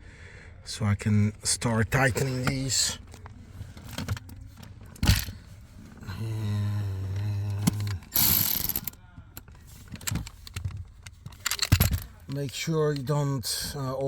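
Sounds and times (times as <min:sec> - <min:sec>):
screwdriver whirring: 0:07.8 - 0:08.9.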